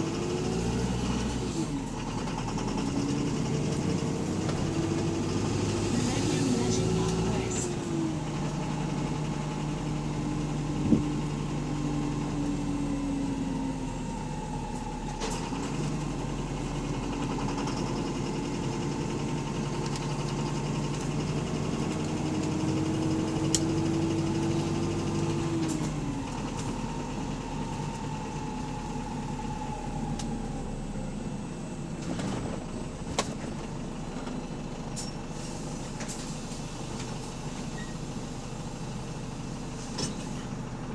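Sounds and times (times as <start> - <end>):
bus engine running: 0.0 - 40.9.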